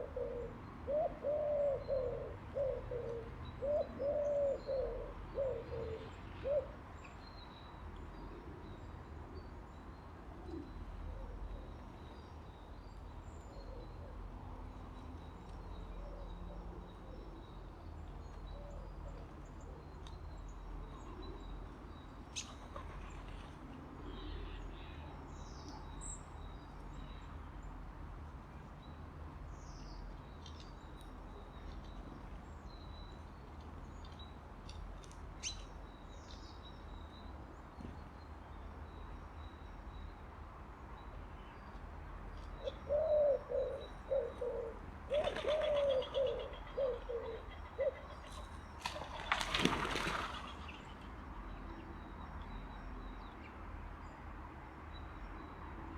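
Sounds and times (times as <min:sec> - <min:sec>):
pigeon cooing: 0:00.0 - 0:06.8, 0:42.7 - 0:48.4
wings flapping: 0:48.9 - 0:50.6.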